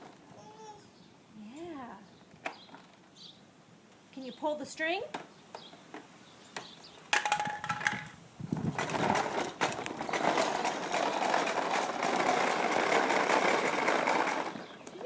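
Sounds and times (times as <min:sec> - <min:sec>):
toy lawn mower running: 0:08.7 - 0:15.0.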